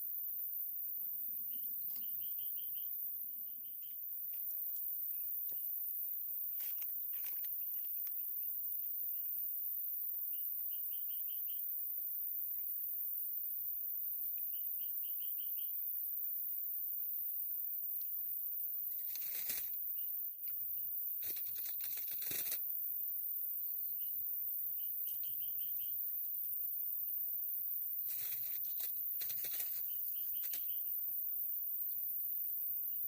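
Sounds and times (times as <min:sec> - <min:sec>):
small repeated chirps: 0:01.2 - 0:05.8, 0:18.9 - 0:22.8, 0:23.9 - 0:26.1, 0:28.0 - 0:31.0
steady high hiss: 0:26.5 - 0:31.9.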